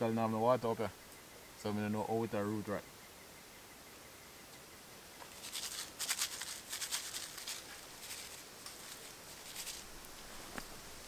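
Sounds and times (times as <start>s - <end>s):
crisp rustling and crackling: 5.2s - 11.0s.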